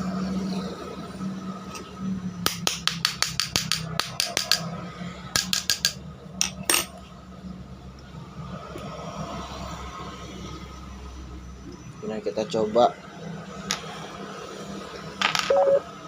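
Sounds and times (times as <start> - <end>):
sharp metallic taps: 2.4 - 4.7, 5.4 - 6.0.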